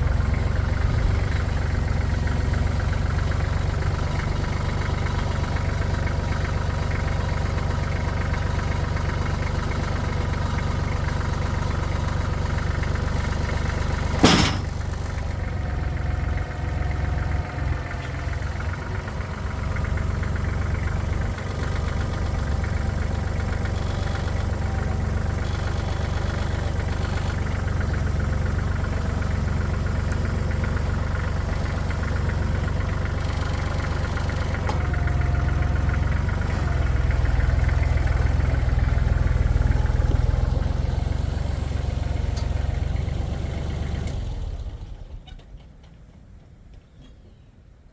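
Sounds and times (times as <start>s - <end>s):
engine idling: 0.0s - 45.4s
sharp metal clank: 14.2s - 14.9s.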